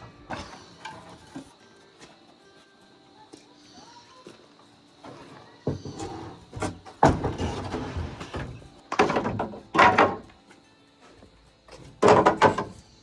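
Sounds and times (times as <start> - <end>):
scraping and rustling: 4.3 - 10.3
wooden boards knocking: 6.6 - 10.3, 11.9 - 12.8.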